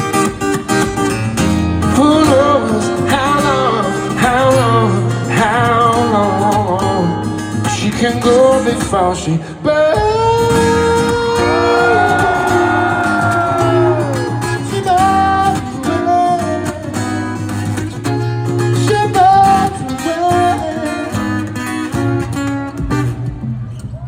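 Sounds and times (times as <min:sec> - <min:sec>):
pop-rock band with guitar: 0:00.0 - 0:24.0.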